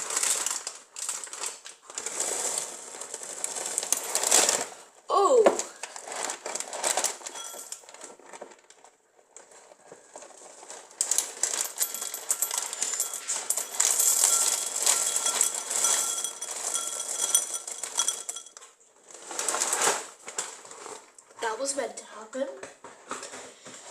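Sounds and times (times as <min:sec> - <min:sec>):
dry cereal pouring into bowl: 0:00.0 - 0:04.8, 0:10.3 - 0:18.5.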